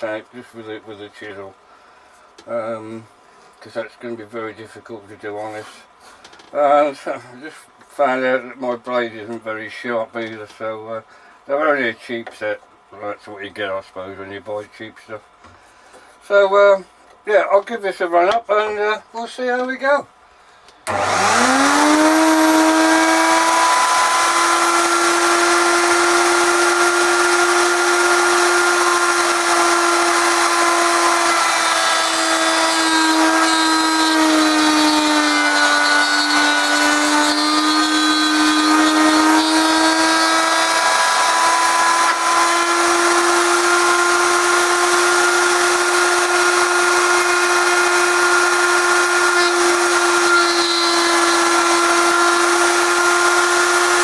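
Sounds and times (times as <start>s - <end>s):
router whining: 20.8s - 54.0s.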